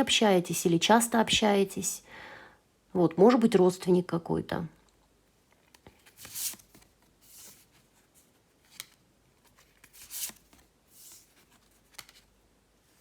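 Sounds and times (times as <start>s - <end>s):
cards sliding swishes: 5.9s - 7.8s, 8.6s - 12.3s.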